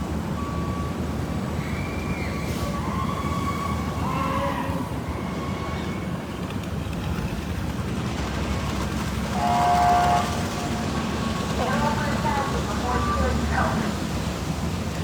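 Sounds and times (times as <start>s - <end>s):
low street rumble: 0.0s - 15.0s
vehicle horn blast: 9.4s - 10.4s.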